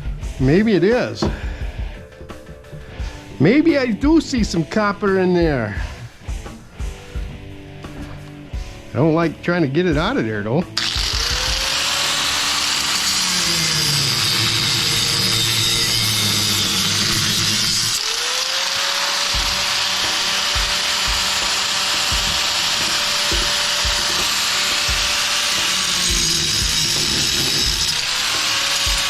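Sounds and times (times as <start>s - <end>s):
power tool cutting: 10.8s - 29.0s.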